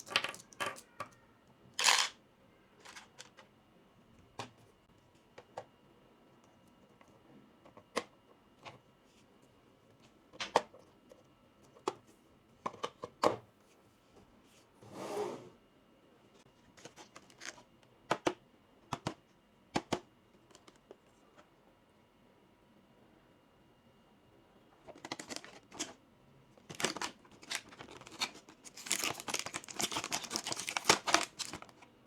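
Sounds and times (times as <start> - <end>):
plastic toy pieces clicking: 0.0 - 1.2, 1.8 - 2.2
rustling scrape: 14.8 - 15.6.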